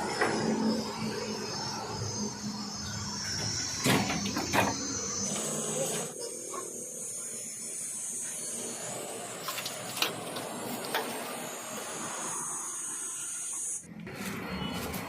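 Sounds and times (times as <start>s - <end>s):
compressed air hissing: 2.0s - 13.9s.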